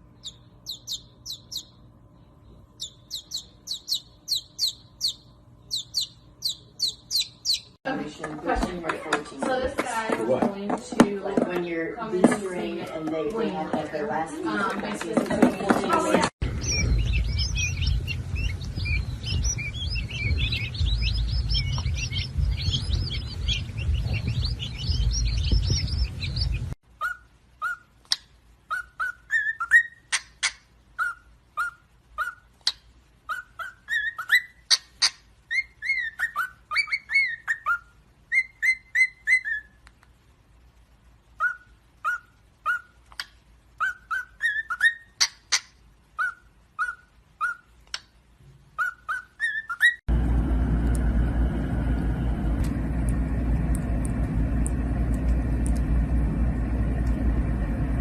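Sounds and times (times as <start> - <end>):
birds chirping: 0.0 - 39.8, 41.2 - 48.1, 48.7 - 58.0
low rumble: 16.4 - 26.8, 50.1 - 58.0.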